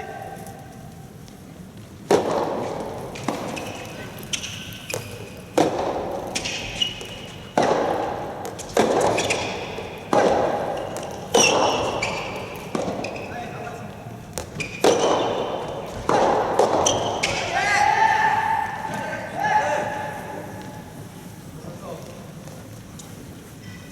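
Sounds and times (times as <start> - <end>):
ball bouncing: 2.1 - 17.6
racket hitting tennis ball: 2.1 - 17.8.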